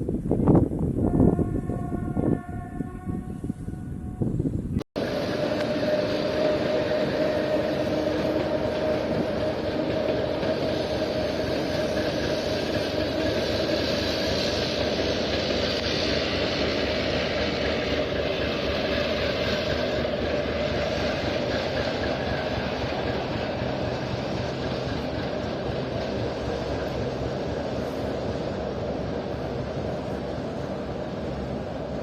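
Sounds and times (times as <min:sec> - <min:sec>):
train rolling: 0:00.1 - 0:32.0
diesel locomotive engine running: 0:00.3 - 0:32.0.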